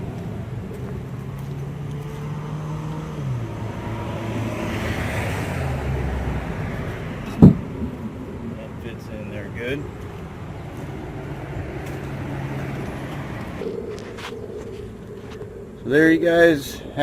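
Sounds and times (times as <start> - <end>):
road noise: 0.0 - 17.0
vehicle engine drone: 0.0 - 17.0.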